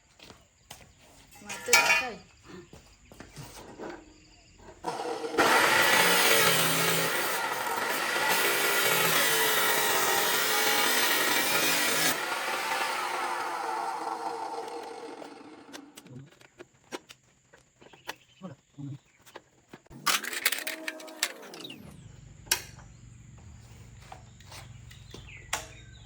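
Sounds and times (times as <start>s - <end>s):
cut-off saw motor: 4.8s - 16.1s, 20.0s - 22.0s
saw disc grinding through metal: 4.8s - 16.1s, 19.9s - 22.0s.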